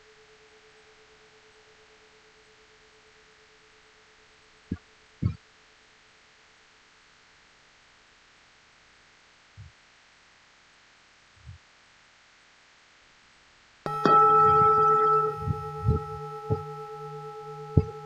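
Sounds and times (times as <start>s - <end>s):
low knocks: 13.9s - 18.0s
temple bell ringing: 13.9s - 18.0s.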